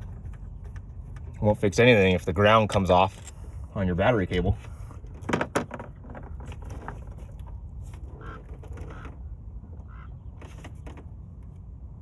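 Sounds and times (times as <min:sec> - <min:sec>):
knocks and clatter of parts: 0:00.0 - 0:02.0, 0:04.1 - 0:11.6
steady low rumble: 0:00.0 - 0:10.4.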